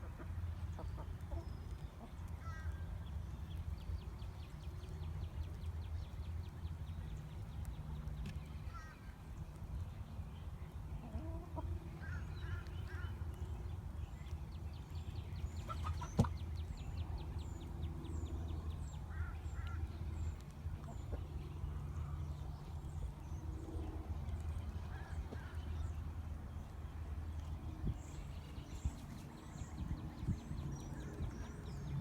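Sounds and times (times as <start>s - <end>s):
chickens clucking: 11.0s - 11.8s, 15.6s - 16.4s.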